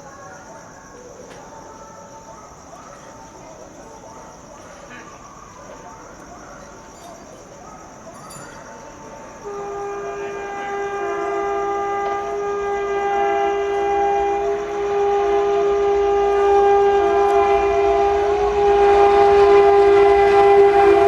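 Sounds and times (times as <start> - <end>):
locomotive dual-tone horn blast: 9.4 - 21.0.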